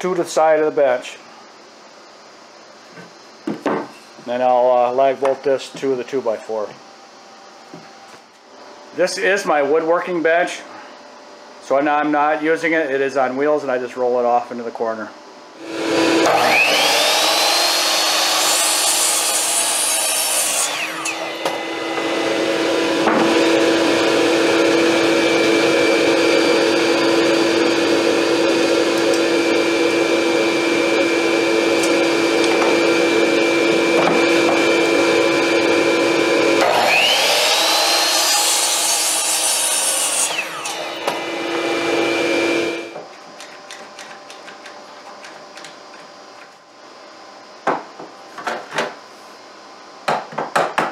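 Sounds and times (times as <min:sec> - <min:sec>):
power tool motor working wood: 0:15.6 - 0:43.0.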